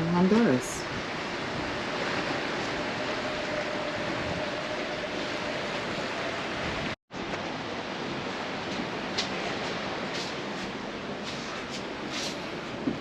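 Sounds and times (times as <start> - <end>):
sea rushing past ship: 0.0 - 13.0
wind rushing: 0.5 - 7.0.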